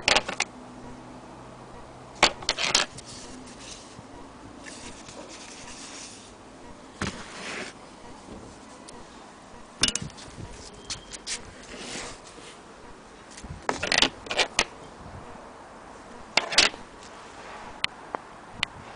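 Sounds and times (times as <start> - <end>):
clicks and knocks: 9.8 - 10.3.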